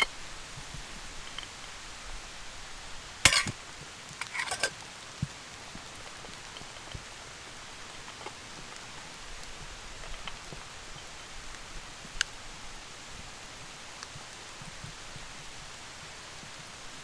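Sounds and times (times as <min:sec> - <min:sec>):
rain pattering on a canvas tent: 0:04.8 - 0:17.0.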